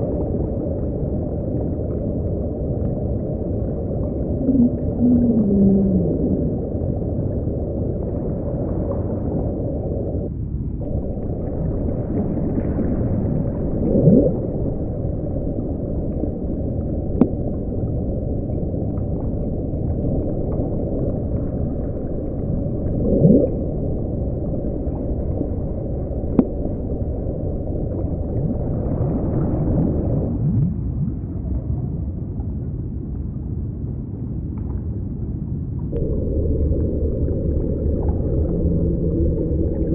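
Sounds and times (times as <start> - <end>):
underwater hiss and rumble: 0.0 - 39.9
rising whale-like calls: 4.0 - 7.5, 13.6 - 14.8, 22.6 - 25.6, 36.0 - 39.9.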